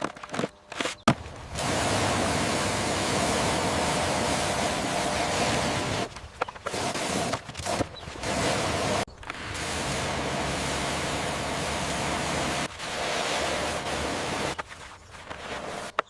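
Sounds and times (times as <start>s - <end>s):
loud rushing hiss: 1.2s - 6.2s, 6.8s - 14.6s.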